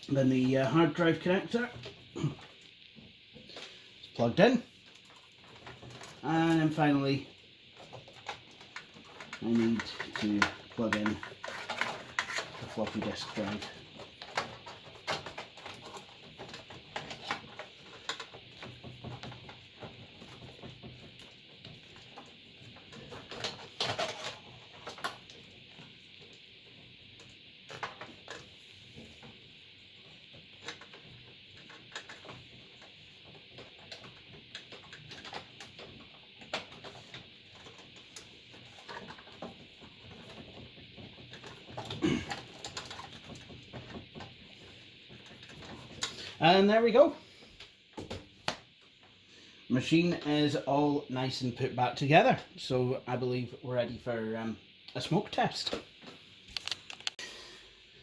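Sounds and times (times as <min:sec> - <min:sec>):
steady hiss: 0:00.0 - 0:58.0
plastic connectors clicking: 0:56.5 - 0:57.2.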